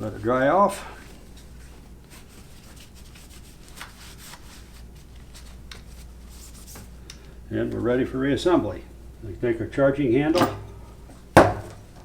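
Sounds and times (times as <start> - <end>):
cloth rubbing on metal: 1.5 - 6.9
metal parts clicking: 10.3 - 10.9.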